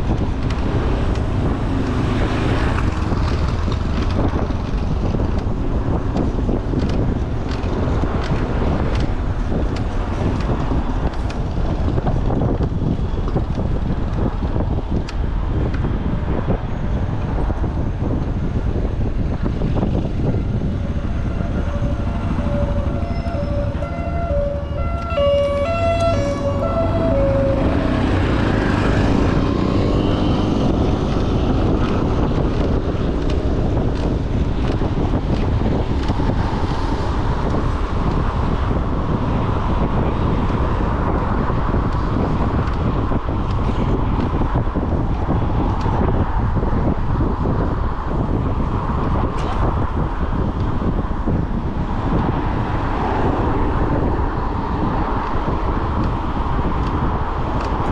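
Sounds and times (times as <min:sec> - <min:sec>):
road traffic: 0:00.0 - 0:57.9
wind on microphone: 0:00.0 - 0:57.9
two-tone emergency siren: 0:20.6 - 0:28.8.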